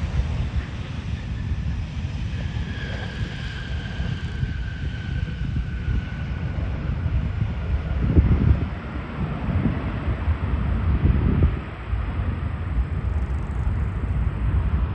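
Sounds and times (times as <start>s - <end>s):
jet engine high whine: 0.0s - 14.9s
heavy low rumble: 5.2s - 14.9s.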